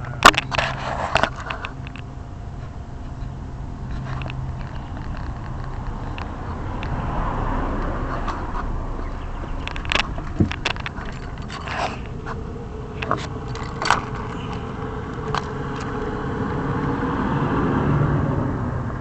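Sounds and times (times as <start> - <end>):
hands handling engine parts: 0.0 - 7.0, 7.8 - 16.2
steady low rumble: 0.0 - 19.0.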